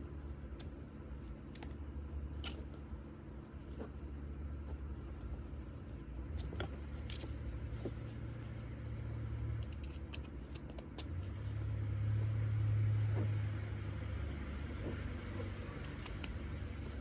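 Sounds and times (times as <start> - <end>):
steady low hum: 0.0 - 17.0
light clicks of handling watch: 0.5 - 13.3.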